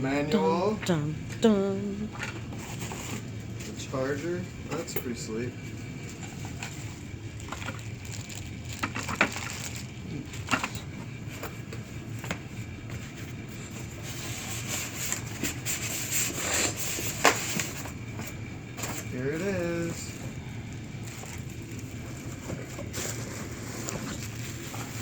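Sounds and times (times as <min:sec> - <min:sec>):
cardboard and foam rustling: 0:06.1 - 0:25.0.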